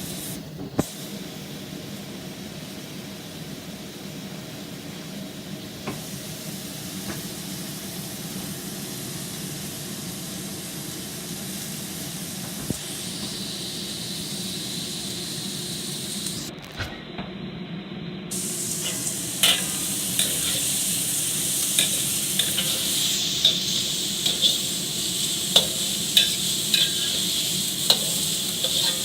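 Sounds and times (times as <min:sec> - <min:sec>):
scallops sizzling in oil: 0:12.8 - 0:16.4, 0:18.3 - 0:29.0.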